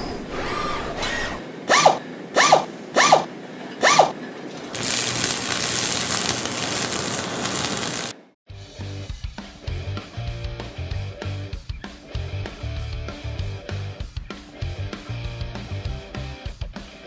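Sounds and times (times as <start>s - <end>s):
steady rasping noise: 0.0s - 4.2s
cable ties zipping: 1.0s - 8.1s.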